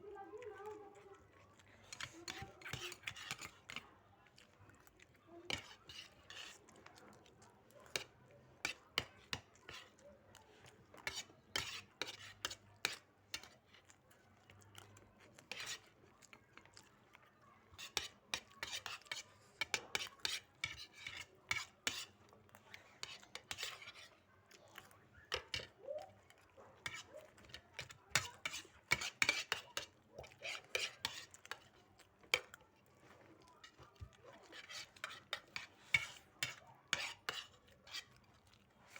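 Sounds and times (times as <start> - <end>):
spoons scraping plates: 0.4 - 3.8, 5.5 - 6.6, 10.9 - 13.6, 14.7 - 16.0, 17.7 - 24.2, 24.9 - 38.9.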